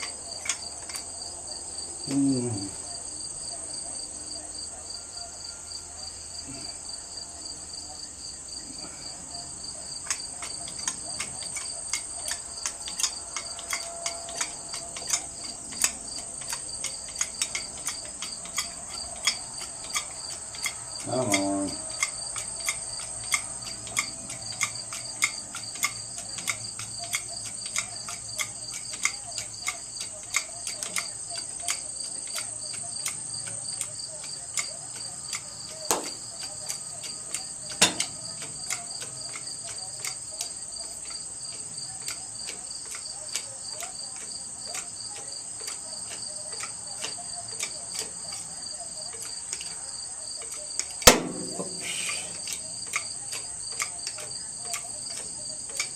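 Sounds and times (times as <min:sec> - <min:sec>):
crickets chirping: 0:00.0 - 0:55.9
sharp clicks ticking: 0:10.0 - 0:48.5.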